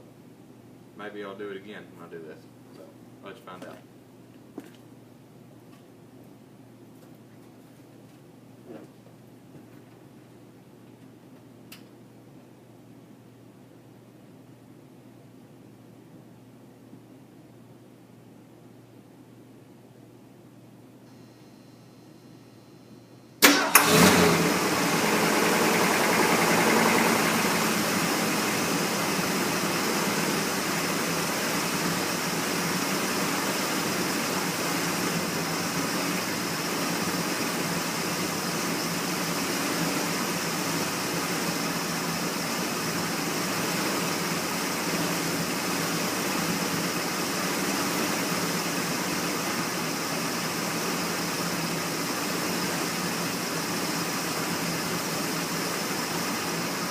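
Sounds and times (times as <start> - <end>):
engine cranking and starting: 23.4 - 28.1
engine idling: 23.4 - 56.9.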